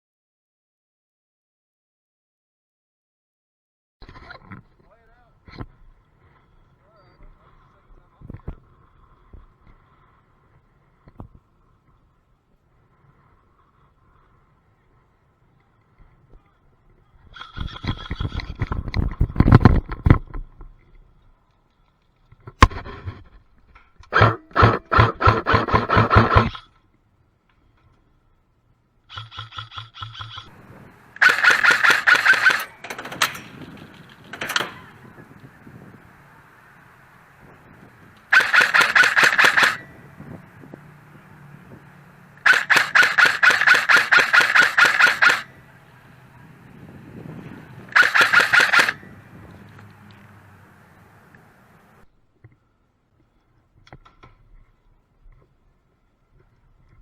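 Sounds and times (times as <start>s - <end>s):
airsoft guns firing: 24.1s - 26.6s, 31.1s - 35.1s, 38.3s - 40.0s, 42.4s - 45.5s, 47.9s - 49.2s.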